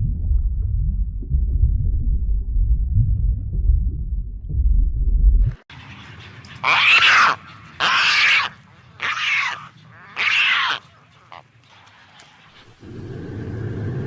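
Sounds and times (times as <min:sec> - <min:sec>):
low rumble: 0:00.0 - 0:05.6
animal calling: 0:05.8 - 0:12.3.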